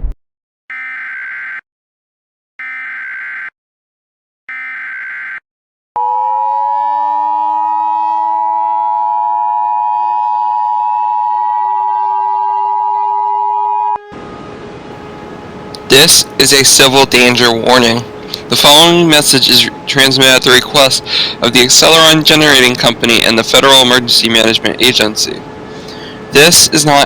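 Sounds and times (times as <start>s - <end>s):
siren wail: 0.7s - 1.6s, 2.6s - 3.5s, 4.5s - 5.4s, 6.0s - 22.0s.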